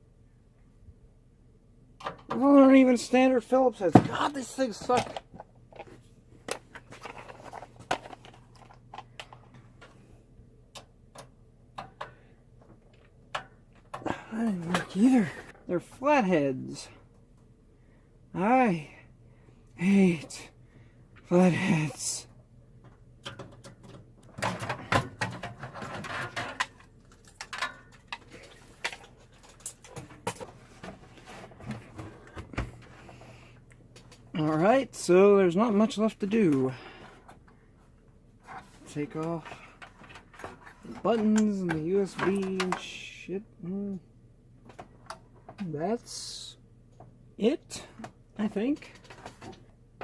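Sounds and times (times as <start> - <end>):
scrapes clicks and rattles: 4.1 - 10.0, 22.8 - 34.7.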